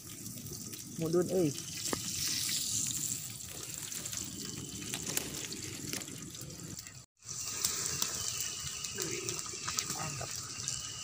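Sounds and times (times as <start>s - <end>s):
oil sizzling in a frying pan: 7.2s - 11.0s.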